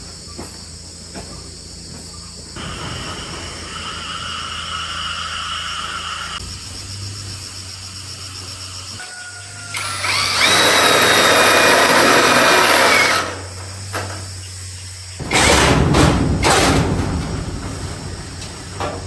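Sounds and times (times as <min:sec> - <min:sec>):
high-pitched insect trilling: 0:00.1 - 0:15.2
high whine: 0:02.5 - 0:19.0.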